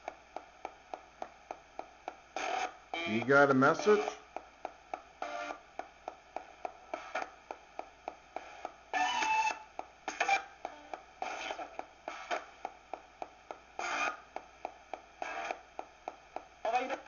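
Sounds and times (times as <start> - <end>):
radio tuning clicks: 0.0 - 17.0
radio static: 2.4 - 4.3, 6.9 - 7.4, 8.4 - 9.5, 10.1 - 12.6, 13.8 - 14.3, 15.2 - 15.6, 16.6 - 17.0
snatches of radio broadcast: 2.4 - 4.4, 5.2 - 5.7, 6.5 - 7.4, 8.4 - 12.6, 13.8 - 15.7, 16.6 - 17.0.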